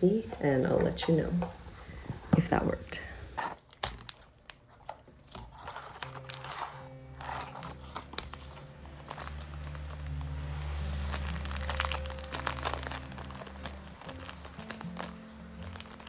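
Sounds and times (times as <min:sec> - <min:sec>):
soft background music: 0:00.0 - 0:04.1, 0:04.7 - 0:16.0
plastic packaging crinkling: 0:03.3 - 0:16.0.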